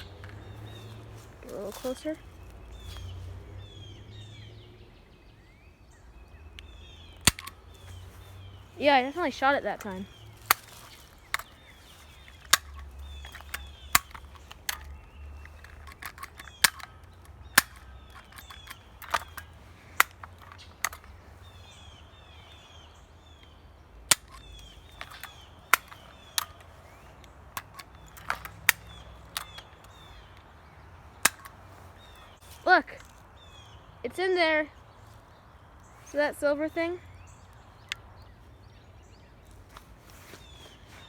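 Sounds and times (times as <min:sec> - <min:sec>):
stapler snapping: 0:07.2 - 0:07.6, 0:09.8 - 0:21.1, 0:24.1 - 0:26.7, 0:27.5 - 0:30.1, 0:31.2 - 0:31.6.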